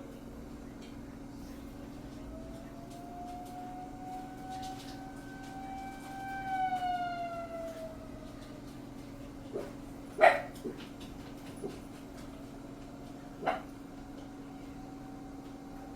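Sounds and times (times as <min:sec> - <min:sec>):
warning siren wailing: 0:02.2 - 0:09.1, 0:13.9 - 0:15.9.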